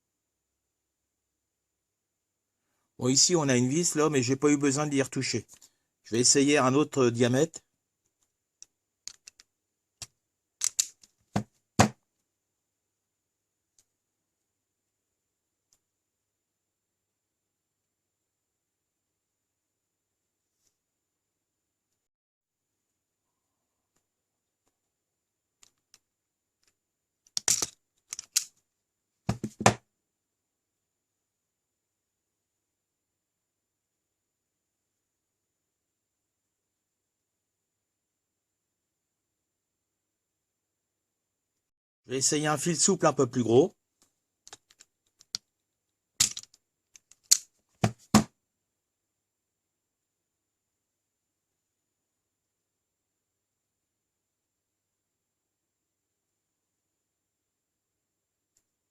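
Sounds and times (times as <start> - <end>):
wire stripper clicks and snaps: 8.6 - 11.1, 27.3 - 28.5, 44.5 - 45.4, 46.2 - 47.5.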